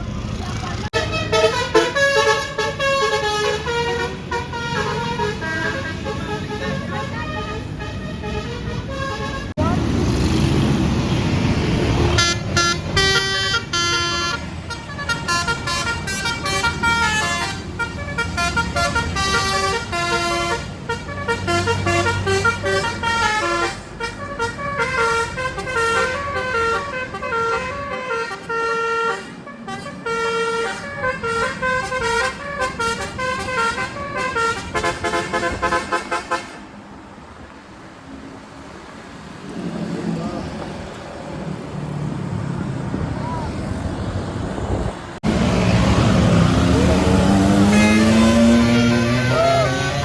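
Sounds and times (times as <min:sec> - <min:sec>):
bus horn playing a melody: 0:00.9 - 0:09.6, 0:12.1 - 0:36.7, 0:45.2 - 0:50.0.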